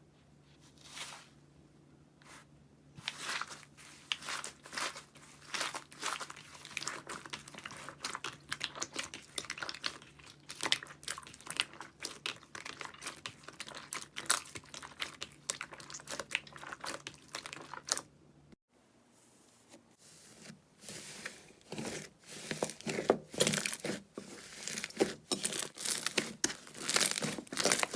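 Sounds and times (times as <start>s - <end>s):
slime squished by hand: 21.7s - 27.9s.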